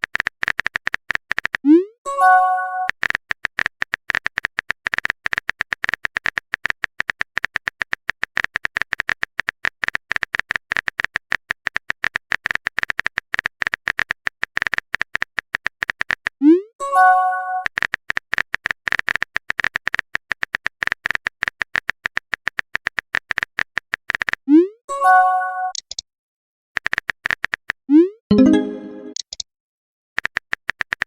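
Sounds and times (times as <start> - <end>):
phone keyboard clicks: 25.7 - 26.0.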